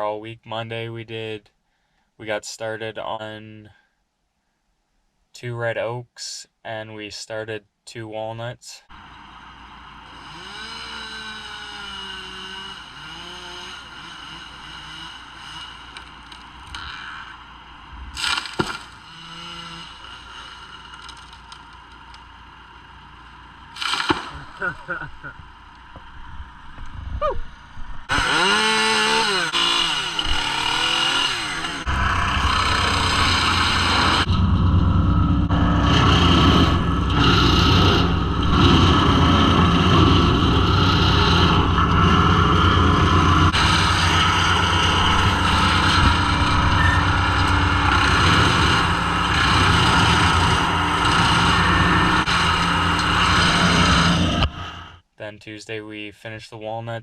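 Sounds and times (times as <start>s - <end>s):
petrol engine revving: 8.9s - 24.6s, 28.0s - 55.0s
machinery running under load: 31.6s - 54.5s.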